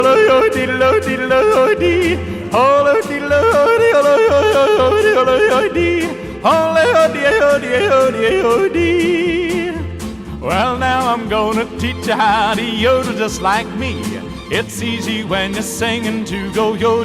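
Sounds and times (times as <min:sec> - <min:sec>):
person yodeling: 0:00.0 - 0:09.8
backing music with steady beat: 0:00.0 - 0:17.0.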